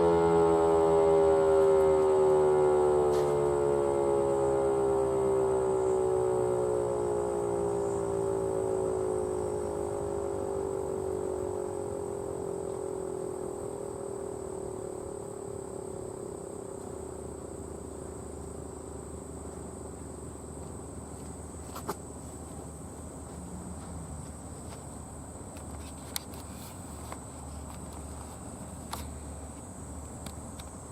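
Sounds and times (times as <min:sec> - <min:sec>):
outdoor warning siren winding down: 0:00.0 - 0:21.5
high-pitched insect drone: 0:00.0 - 0:30.9.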